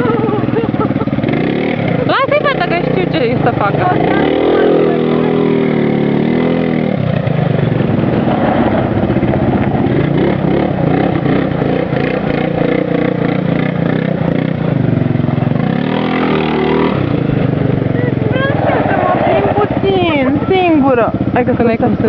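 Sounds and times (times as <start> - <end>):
atv engine revving: 0.0 - 22.0.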